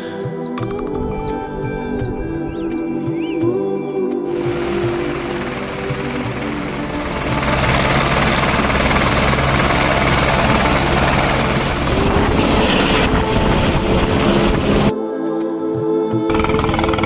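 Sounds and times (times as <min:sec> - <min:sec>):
helicopter engine and rotor: 0:04.3 - 0:14.9.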